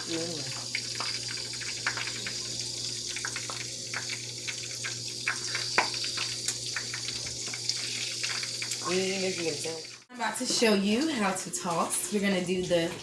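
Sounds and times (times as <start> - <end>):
oil sizzling in a deep fryer: 0.0 - 10.1.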